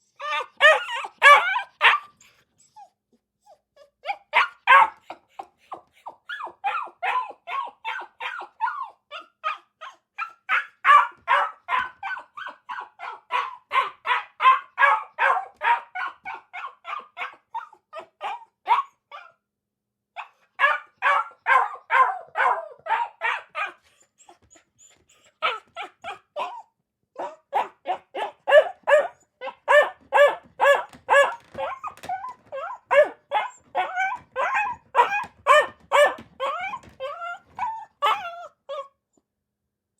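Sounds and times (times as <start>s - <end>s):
dog barking rapidly: 0.3s - 2.1s, 4.3s - 5.1s, 10.2s - 17.4s, 20.6s - 23.8s, 27.2s - 32.0s, 32.9s - 36.9s.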